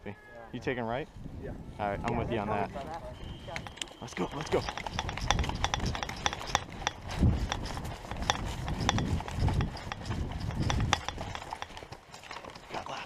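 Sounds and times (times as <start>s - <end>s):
running footsteps: 3.3s - 13.0s
gear clicking and clattering: 3.6s - 13.0s.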